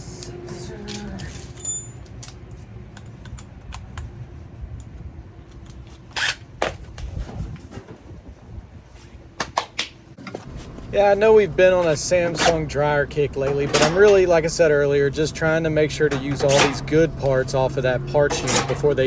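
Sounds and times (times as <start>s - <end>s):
dryer parts clicking and knocking: 13.4s - 14.5s, 15.9s - 17.4s, 18.2s - 19.0s.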